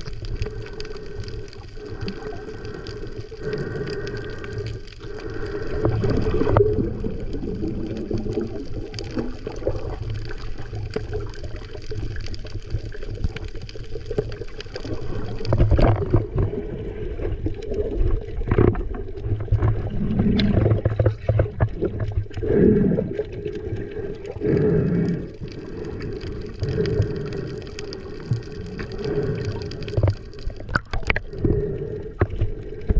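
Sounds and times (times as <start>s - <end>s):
muffled underwater sloshing: 0.0s - 32.9s.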